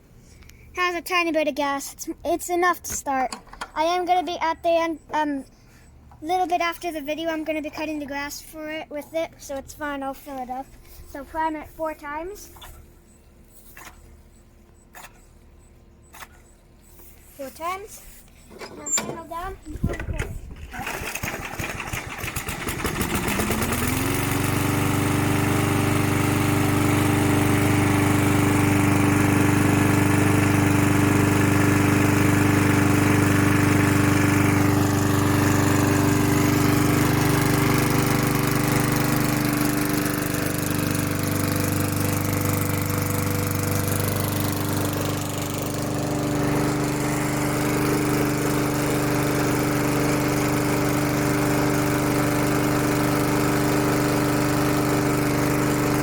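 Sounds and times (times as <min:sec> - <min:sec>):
lawn mower engine starting and running: 0:16.7 - 0:56.0.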